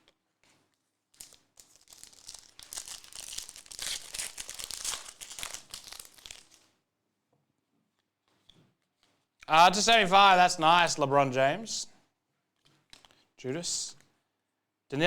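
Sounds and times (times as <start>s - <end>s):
plastic wrapper crinkling and tearing: 0.4s - 6.8s.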